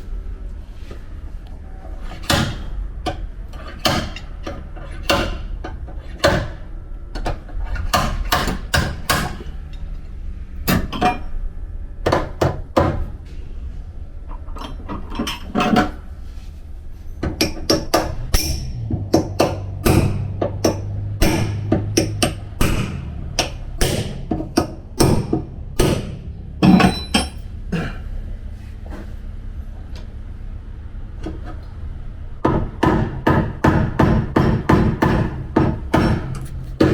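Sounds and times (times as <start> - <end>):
hammer striking sheet metal: 17.4 - 27.4, 32.4 - 36.9.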